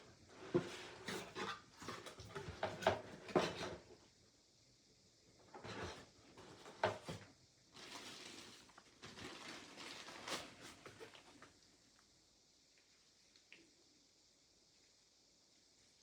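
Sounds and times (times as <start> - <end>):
cardboard packaging rustling: 7.8 - 11.4.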